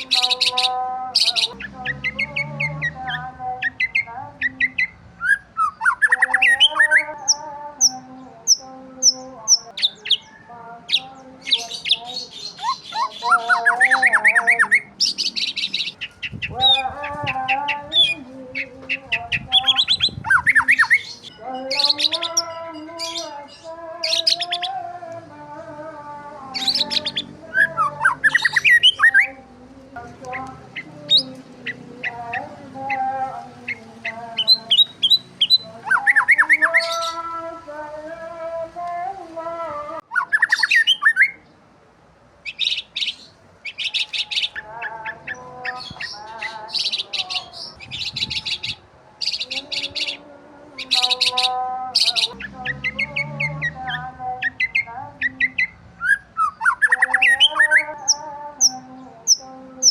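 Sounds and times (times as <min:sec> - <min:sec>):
harsh bird squawks: 0:00.0 - 0:07.0, 0:11.8 - 0:22.2, 0:26.6 - 0:29.3, 0:40.1 - 0:41.4, 0:50.8 - 0:58.2
drawn-out bird calls: 0:00.0 - 0:08.0, 0:11.0 - 0:23.4
rapid bird trills: 0:00.0 - 0:24.8, 0:26.6 - 0:29.4, 0:30.3 - 0:37.3, 0:40.1 - 0:41.4, 0:42.4 - 0:50.2, 0:50.8 - 0:59.9
birds chirping: 0:00.0 - 0:41.7, 0:42.4 - 0:59.9.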